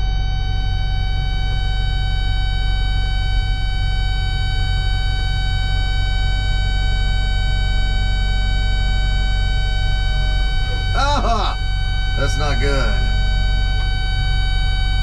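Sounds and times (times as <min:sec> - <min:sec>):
high-pitched engine tone: 0:07.2 - 0:15.0.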